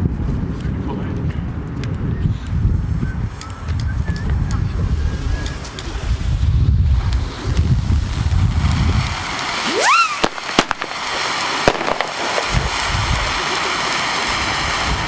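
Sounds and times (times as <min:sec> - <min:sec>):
crackling hiss: 0:04.5 - 0:15.0
firework bangs: 0:05.6 - 0:15.0
firework rising whistle: 0:08.2 - 0:15.0.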